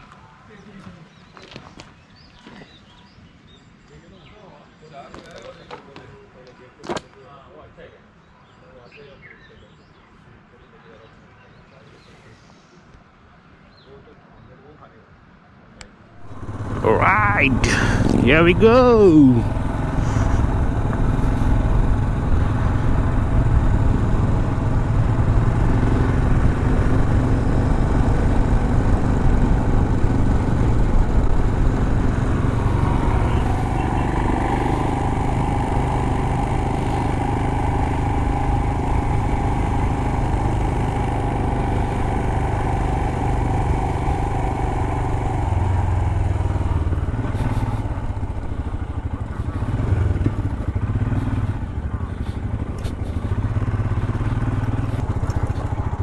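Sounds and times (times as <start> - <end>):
motorcycle engine running: 16.2 - 56.0.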